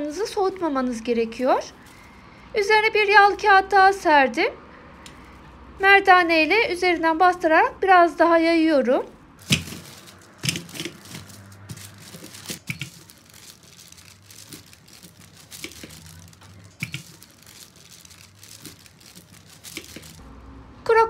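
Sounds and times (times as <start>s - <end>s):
baking paper crinkling: 0.2s - 2.3s, 9.4s - 20.2s.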